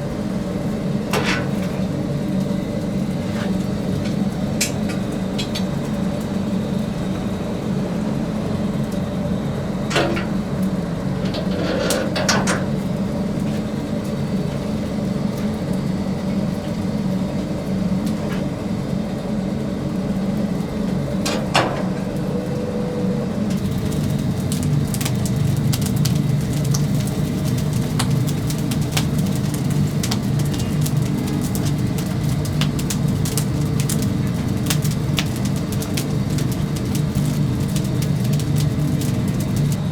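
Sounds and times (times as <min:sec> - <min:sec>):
rotisserie mechanical hum: 0:00.0 - 0:39.9
crackling: 0:23.5 - 0:39.9.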